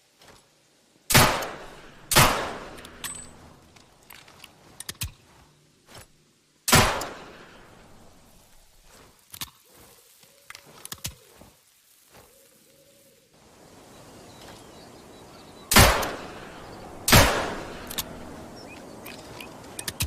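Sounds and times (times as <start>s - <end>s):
pistol shots with echo: 1.1s - 3.5s, 6.7s - 7.7s, 15.7s - 18.5s
small metallic clicks: 2.7s - 5.2s, 17.5s - 18.3s, 19.0s - 20.0s.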